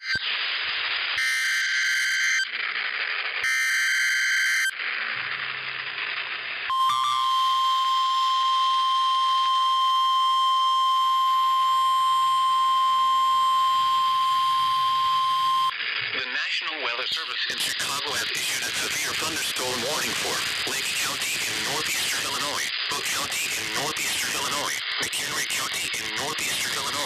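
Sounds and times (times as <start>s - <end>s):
buzzy data bursts: 0.0s - 16.4s, 17.2s - 27.0s
static hiss: 0.0s - 27.0s
steady alarm tone: 1.2s - 2.6s, 3.4s - 4.8s, 6.7s - 15.8s.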